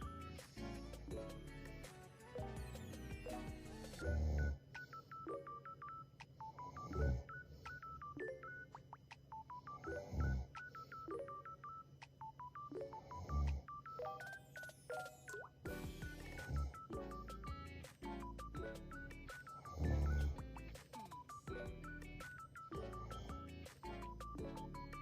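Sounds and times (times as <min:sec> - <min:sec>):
woman snoring: 0:04.0 - 0:04.6, 0:09.8 - 0:10.5, 0:13.0 - 0:13.7, 0:19.6 - 0:20.4.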